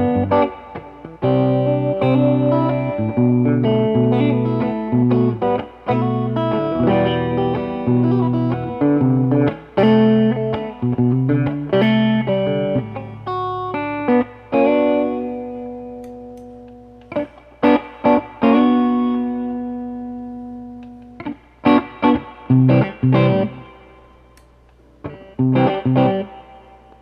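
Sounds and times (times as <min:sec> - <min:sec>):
electric guitar chords: 0:00.0 - 0:27.0.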